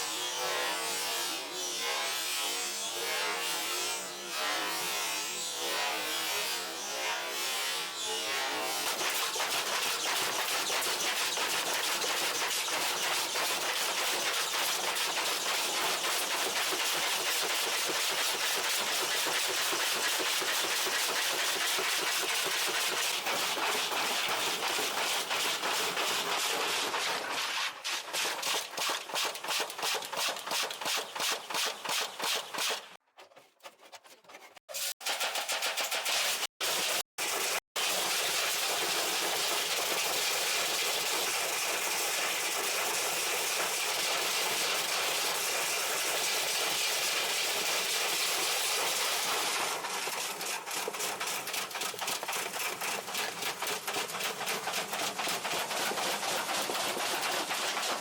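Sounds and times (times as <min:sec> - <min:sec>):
washing machine rattling and banging: 0:48.2 - 0:58.0.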